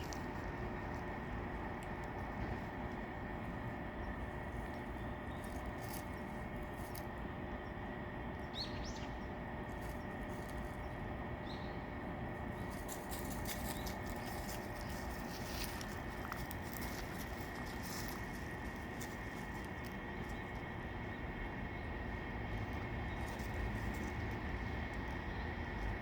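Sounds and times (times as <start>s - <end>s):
soft crackling clicks: 1.7s - 2.3s.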